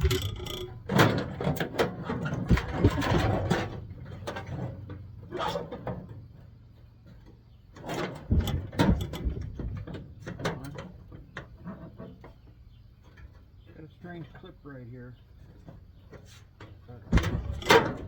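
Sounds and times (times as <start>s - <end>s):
metal parts and tools clattering: 0.0s - 4.8s, 17.1s - 18.0s
steady low hum: 0.0s - 18.0s.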